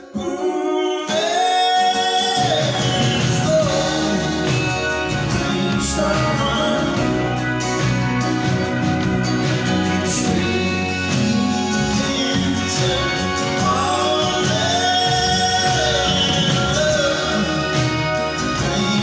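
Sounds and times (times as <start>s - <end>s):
live band with bass and drums: 1.1s - 19.0s.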